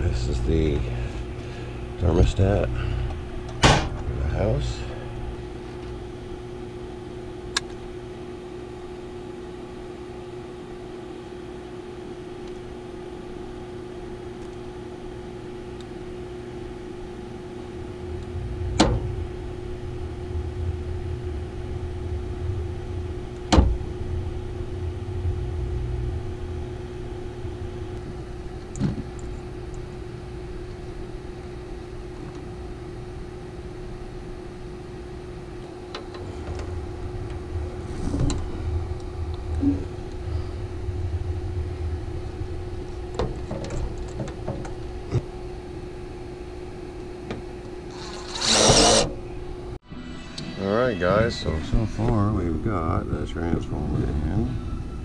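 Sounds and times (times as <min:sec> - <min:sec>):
steady mechanical hum: 0:00.0 - 0:55.0
low rumble: 0:17.6 - 0:31.6, 0:35.2 - 0:46.7.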